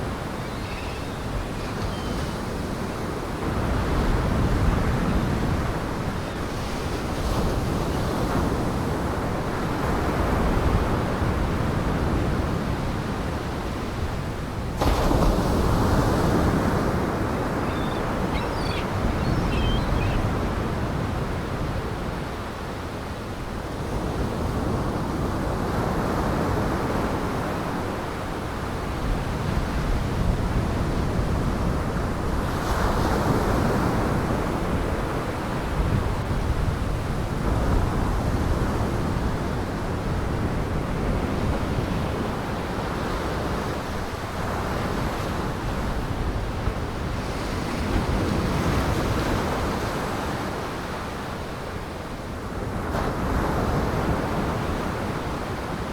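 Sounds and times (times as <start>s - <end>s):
strong wind: 0.0s - 22.3s.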